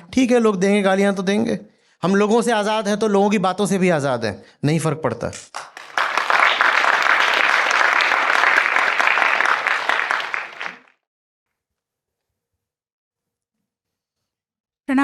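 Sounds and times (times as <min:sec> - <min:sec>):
audience applauding: 0:05.6 - 0:11.0.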